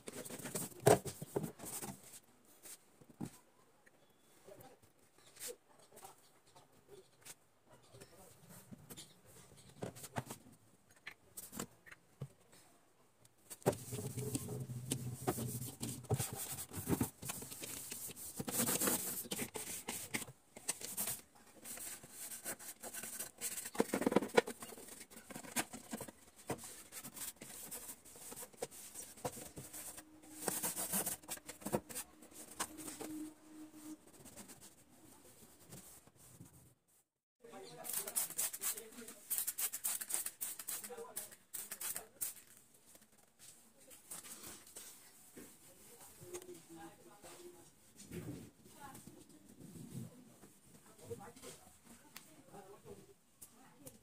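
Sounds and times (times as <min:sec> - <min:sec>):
objects being handled: 0:00.0 - 0:03.5, 0:13.3 - 0:36.7.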